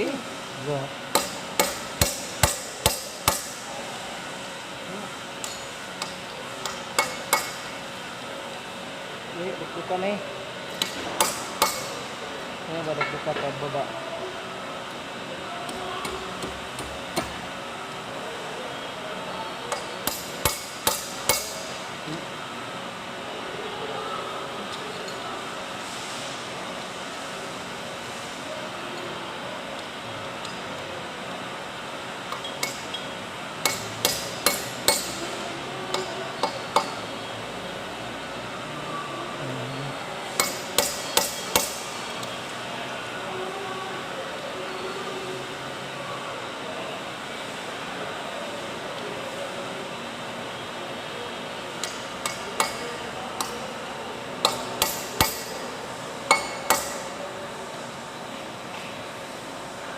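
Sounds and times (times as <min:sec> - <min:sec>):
steady background hum: 0:00.0 - 0:59.9
hammer striking metal: 0:01.1 - 0:03.6, 0:19.7 - 0:21.6, 0:33.6 - 0:35.2, 0:40.4 - 0:41.9, 0:54.4 - 0:55.6, 0:56.3 - 0:57.0.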